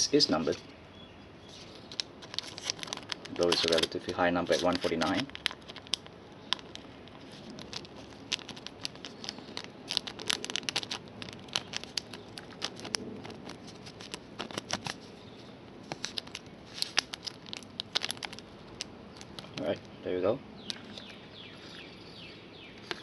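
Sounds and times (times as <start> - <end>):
cards clicking and rustling: 1.6 - 15.1, 15.9 - 19.8.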